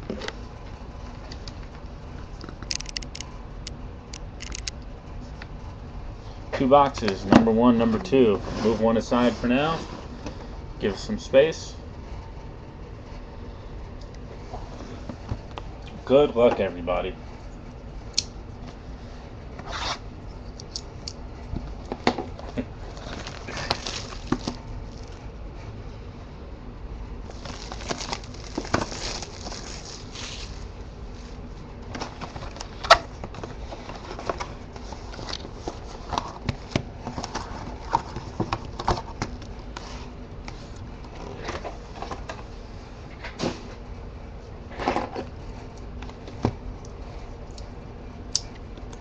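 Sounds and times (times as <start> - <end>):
cardboard rustling: 22.8 - 25.2, 27.3 - 30.7
plastic wrap crinkling: 22.8 - 25.2, 27.3 - 30.7.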